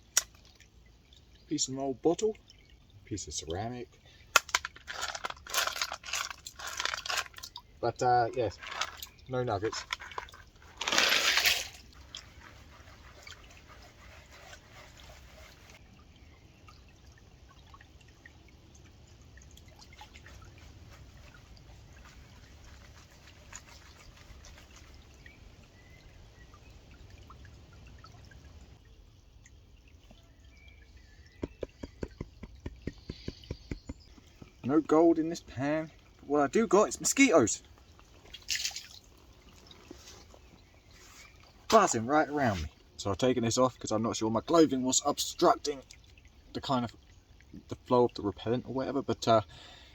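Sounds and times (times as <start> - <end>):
water sloshing in a gold pan: 0.0 - 49.9
water splash: 8.6 - 15.8, 38.2 - 39.2.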